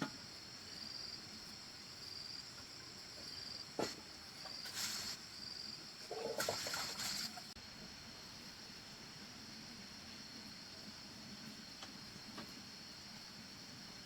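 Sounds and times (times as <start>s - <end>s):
crickets chirping: 0.0s - 14.0s.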